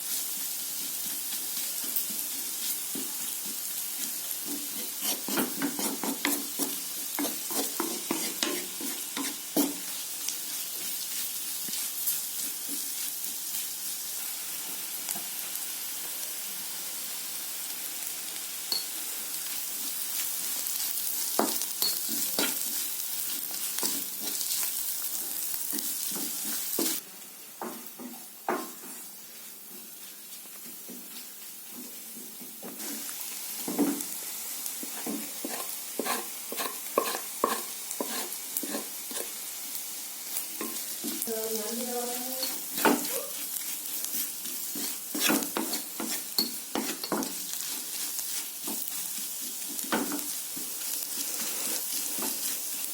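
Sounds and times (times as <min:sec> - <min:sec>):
food sizzling in oil: 0:00.0 - 0:52.9
spoon scraping a pan: 0:04.0 - 0:10.0, 0:19.8 - 0:24.8, 0:34.8 - 0:39.4, 0:42.4 - 0:52.9.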